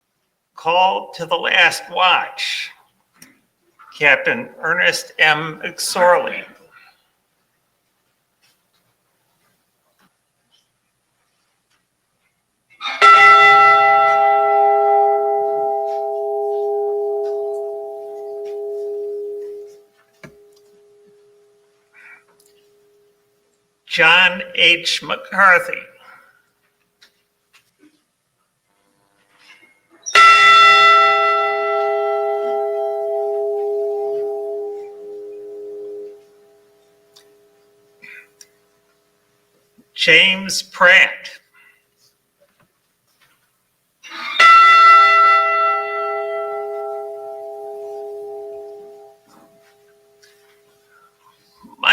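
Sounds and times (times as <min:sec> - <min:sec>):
ship's bell ringing: 0:13.0 - 0:21.5, 0:30.1 - 0:36.8, 0:44.4 - 0:50.5.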